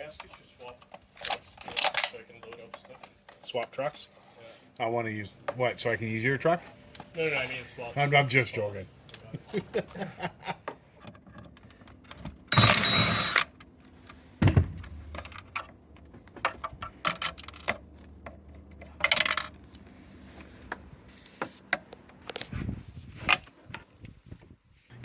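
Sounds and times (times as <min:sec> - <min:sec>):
dull thumps: 0:14.4 - 0:15.2
rustling noise: 0:19.6 - 0:25.0.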